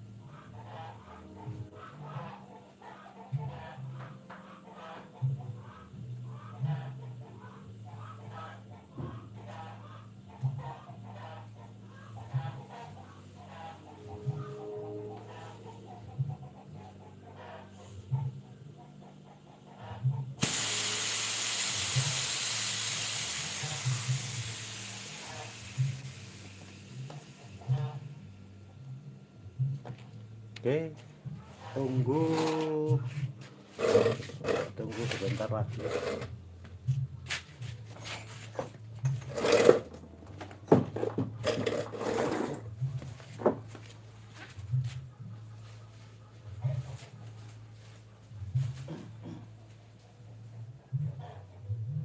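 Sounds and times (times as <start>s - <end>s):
pressurised gas hissing from pipe: 20.4s - 28.1s.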